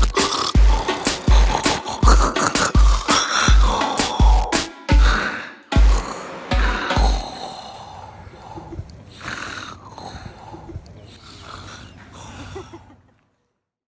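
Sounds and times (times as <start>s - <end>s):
heavy bass beats: 0.0s - 7.4s
man snoring: 0.0s - 12.4s.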